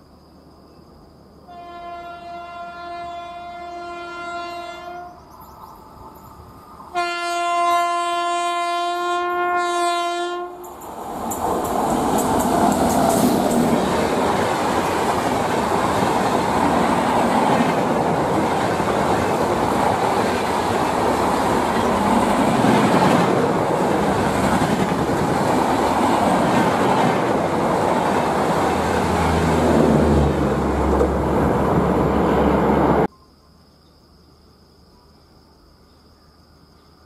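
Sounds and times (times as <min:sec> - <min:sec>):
deep train rumble: 0:01.6 - 0:33.1
train wheels rushing on rails: 0:10.5 - 0:33.1.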